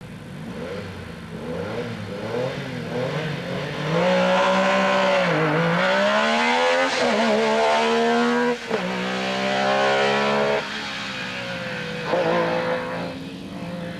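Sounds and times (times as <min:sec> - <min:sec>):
rally car engine revving: 0:00.4 - 0:13.9.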